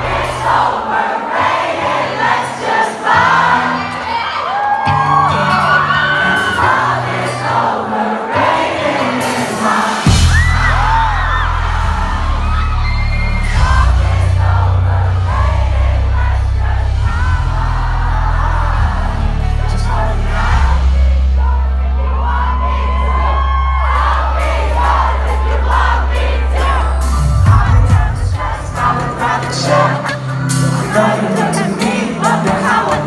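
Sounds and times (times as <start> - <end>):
heavy bass line: 0.0 - 0.8, 10.1 - 33.0
crowd singing along: 0.0 - 33.0
live pop band: 0.0 - 33.0
crowd whooping: 3.6 - 7.7, 9.6 - 31.7.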